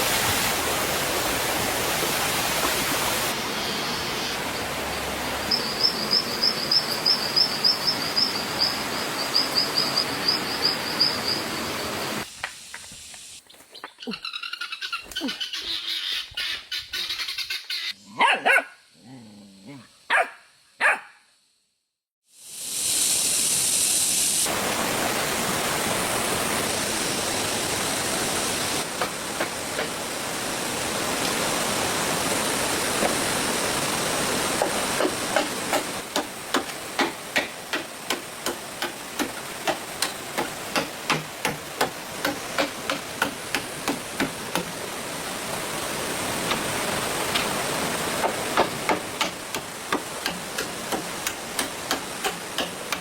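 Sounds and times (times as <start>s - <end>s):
steady background hiss: 0.0s - 14.0s, 22.3s - 53.0s
sharp knocks: 34.6s - 44.7s, 48.2s - 53.0s.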